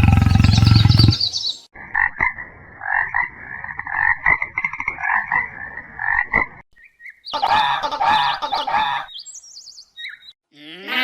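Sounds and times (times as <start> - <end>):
frogs croaking: 0.0 - 6.6.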